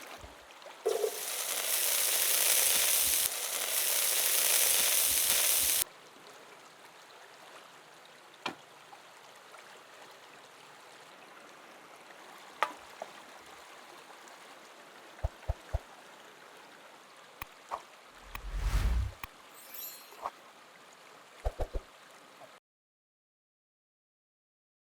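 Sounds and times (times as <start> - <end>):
stream flowing: 0.0 - 1.3, 18.2 - 22.5
food sizzling in a pan: 0.8 - 5.8.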